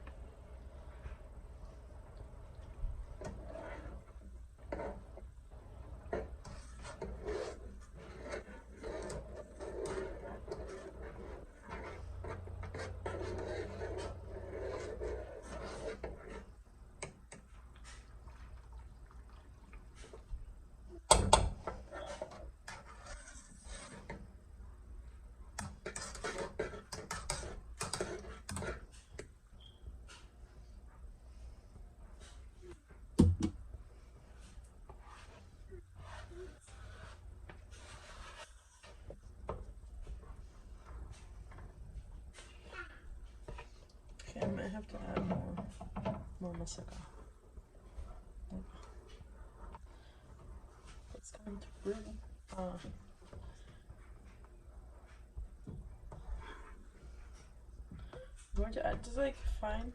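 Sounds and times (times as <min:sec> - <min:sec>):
spoon scraping a pot: 0:03.0 - 0:18.2, 0:21.0 - 0:24.4, 0:25.5 - 0:30.3.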